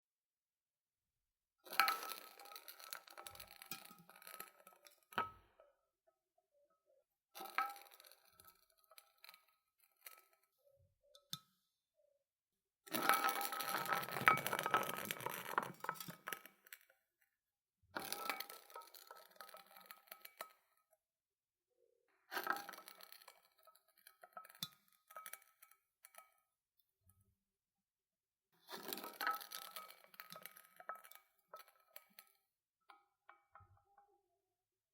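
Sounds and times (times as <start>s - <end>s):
can rolling and rattling: 1.7s - 5.4s, 7.4s - 10.4s, 12.9s - 16.9s, 18.0s - 20.6s, 22.3s - 26.2s, 28.6s - 32.4s.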